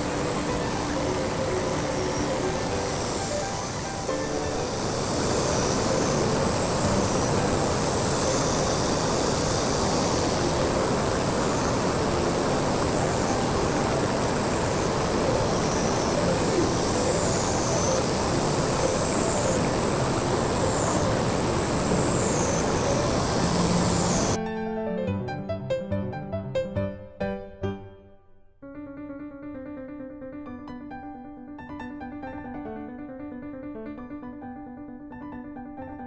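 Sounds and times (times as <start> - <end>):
waterfall and stream rushing: 0.0 - 24.4.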